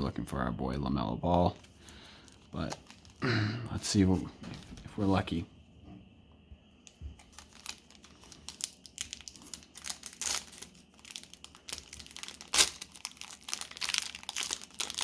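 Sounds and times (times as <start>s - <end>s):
plastic wrapper crinkling and tearing: 1.5s - 3.2s, 6.8s - 15.0s.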